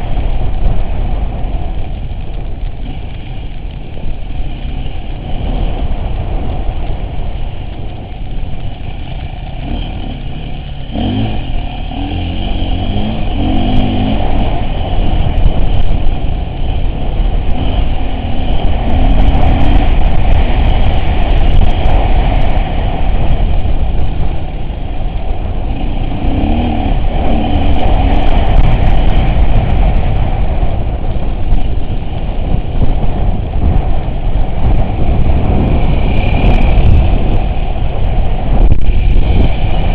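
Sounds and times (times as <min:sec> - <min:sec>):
off-road vehicle engine running: 0:00.0 - 0:39.9.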